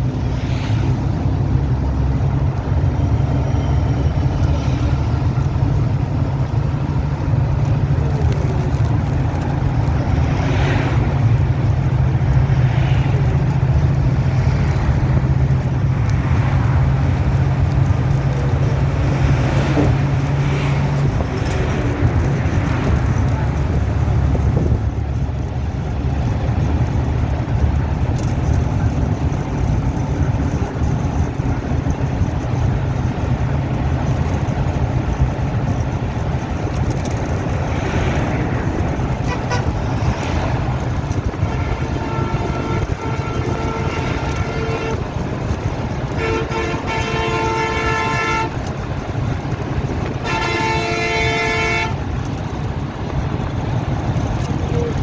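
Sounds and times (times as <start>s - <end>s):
low engine rumble: 0.0s - 55.0s
wind noise: 0.0s - 55.0s
long horn blasts: 38.9s - 52.3s.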